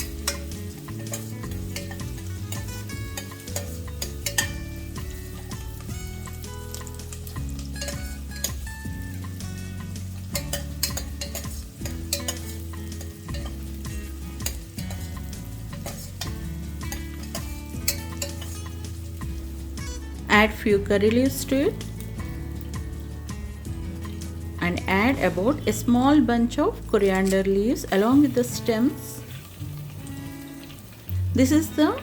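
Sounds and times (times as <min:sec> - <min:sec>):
spatula scraping metal pot: 0:00.0 - 0:04.7, 0:10.3 - 0:18.8
background music chords: 0:00.0 - 0:32.0
onions frying in oil: 0:00.0 - 0:32.0.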